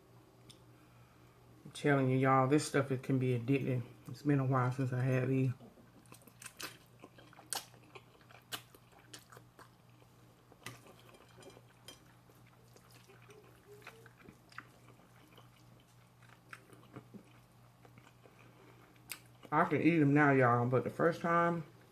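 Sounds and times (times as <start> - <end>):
steady low hum: 0.0 - 21.9
person chewing noodles: 5.6 - 19.6.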